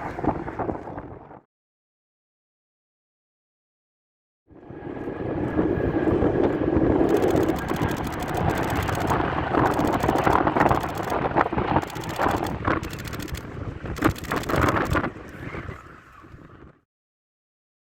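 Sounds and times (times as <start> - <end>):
wind buffeting microphone: 0.0 - 1.4, 4.6 - 16.8
jet engines rumbling: 4.5 - 16.6.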